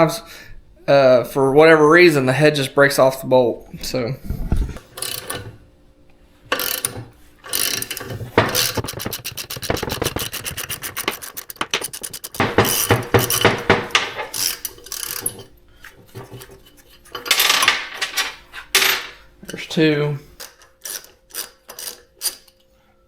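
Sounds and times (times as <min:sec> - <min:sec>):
metal tools scraping: 0:04.8 - 0:05.6, 0:06.5 - 0:19.8, 0:20.4 - 0:22.6
ratchet wrench clicking: 0:04.9 - 0:05.5, 0:06.5 - 0:15.5, 0:20.4 - 0:22.5.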